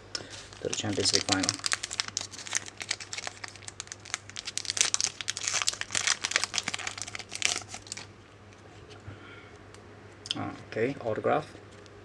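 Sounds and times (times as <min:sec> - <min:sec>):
card pack wrappers crinkling: 0:00.2 - 0:08.1.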